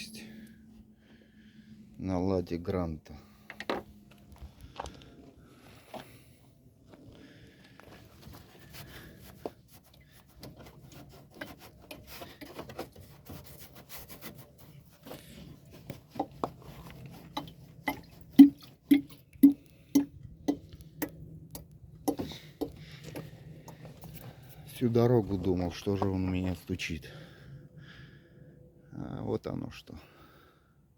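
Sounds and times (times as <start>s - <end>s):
low steady hum: 0.0s - 30.9s
sharp knocking in coolant system: 17.9s - 23.3s.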